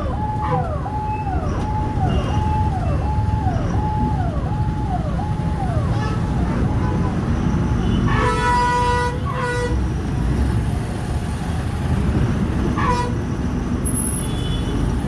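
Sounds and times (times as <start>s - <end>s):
road traffic rumble: 0.0s - 15.0s
vehicle horns honking: 7.8s - 9.8s.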